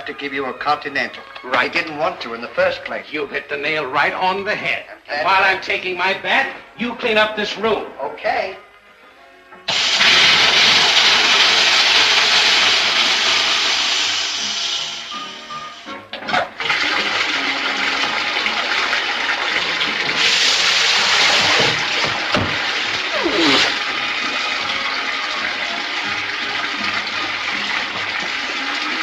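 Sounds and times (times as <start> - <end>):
background music: 0.0 - 29.0
water rushing through plumbing: 9.7 - 29.0.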